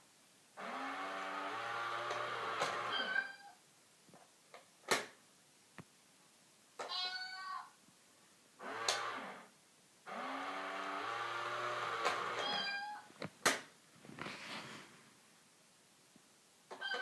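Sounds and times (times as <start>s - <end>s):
cats meowing and yowling: 2.9s - 3.6s.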